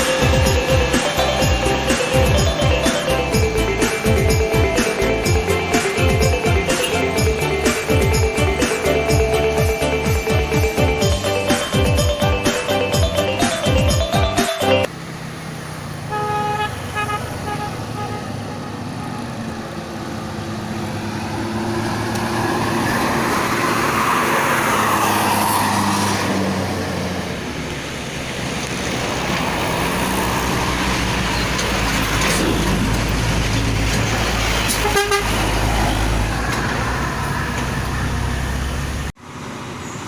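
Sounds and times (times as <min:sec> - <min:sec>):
bus engine humming: 0:00.0 - 0:40.0
road noise: 0:00.0 - 0:40.0
bus horn toot: 0:06.6 - 0:07.5, 0:16.1 - 0:18.7, 0:34.6 - 0:35.7.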